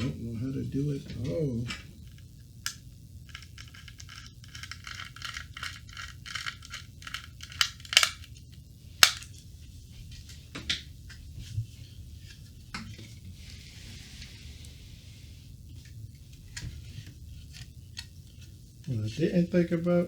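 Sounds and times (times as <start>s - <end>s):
metal parts rattling and clicking: 3.3s - 8.3s.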